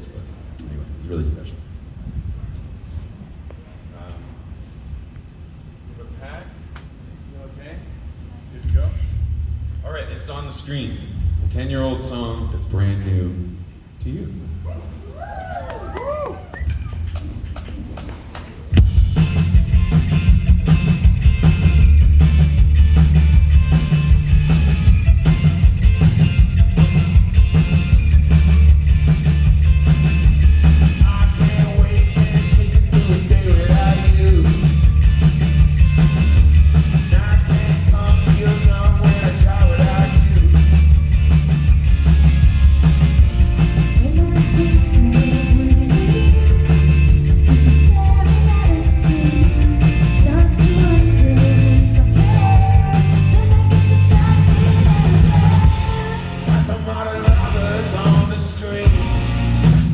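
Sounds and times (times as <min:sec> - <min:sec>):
live rock band: 0:15.8 - 0:59.9
person singing: 0:44.0 - 0:59.2.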